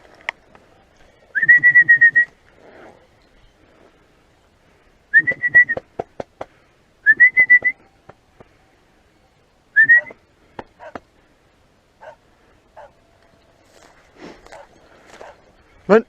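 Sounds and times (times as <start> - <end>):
person whistling short notes: 1.4 - 2.3, 5.1 - 5.8, 7.0 - 7.8, 9.8 - 10.2.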